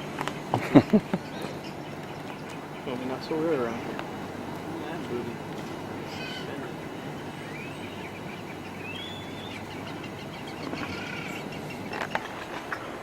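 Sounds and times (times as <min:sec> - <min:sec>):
birds whistling: 0:00.0 - 0:13.0
low background rumble: 0:00.0 - 0:13.0.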